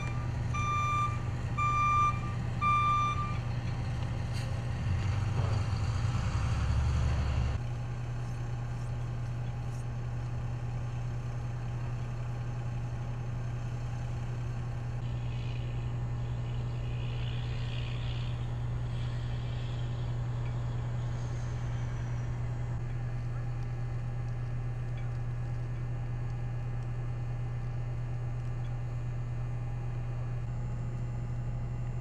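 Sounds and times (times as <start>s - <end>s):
vehicle engine humming: 0.0s - 32.0s.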